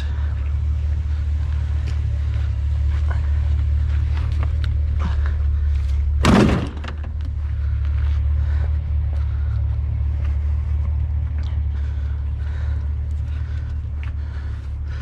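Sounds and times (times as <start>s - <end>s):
vehicle engine idling: 0.0s - 15.0s
heavy thud: 6.2s - 7.3s.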